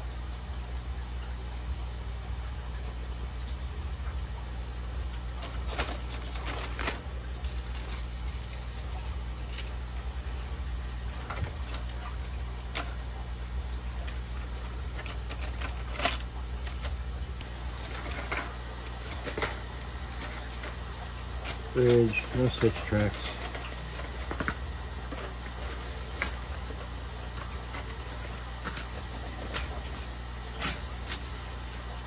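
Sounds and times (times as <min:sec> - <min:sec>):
steady low hum: 0:00.0 - 0:32.0
model track pieces clicking: 0:21.4 - 0:30.0.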